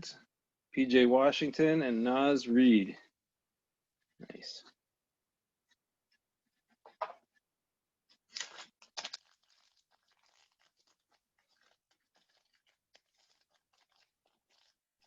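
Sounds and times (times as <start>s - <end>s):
wrapper crackling: 8.2s - 15.0s
wrapper tearing: 8.2s - 15.0s.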